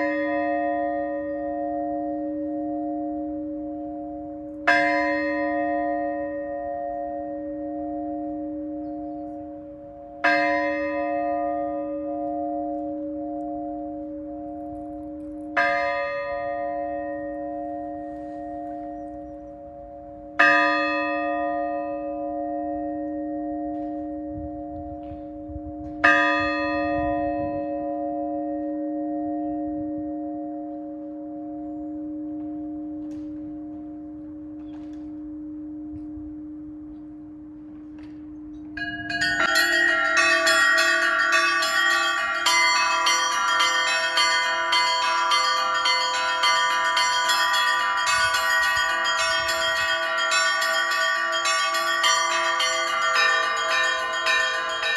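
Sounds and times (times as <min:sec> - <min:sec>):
large church bell ringing: 0:00.0 - 0:54.9
small bells pealing rapidly: 0:38.8 - 0:54.9.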